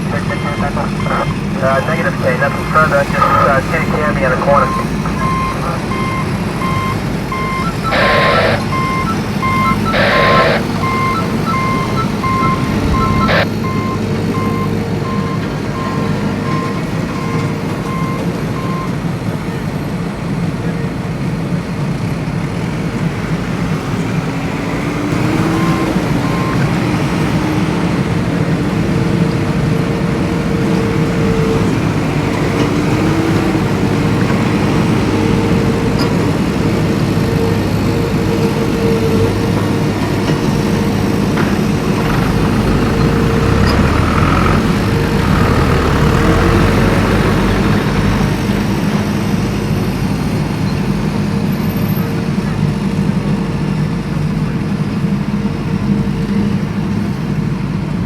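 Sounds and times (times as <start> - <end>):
driving noise rumble: 0.0 - 50.6
vehicle engine running: 0.0 - 58.0.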